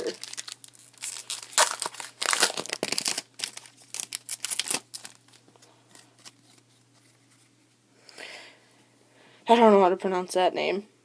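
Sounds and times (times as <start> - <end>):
wrapper torn open and crinkled: 0.0 - 6.7.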